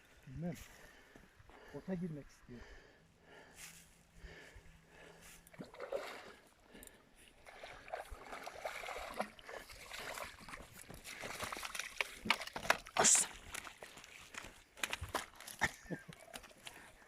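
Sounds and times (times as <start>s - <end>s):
fish splashing in water: 5.6s - 6.5s, 7.4s - 13.4s.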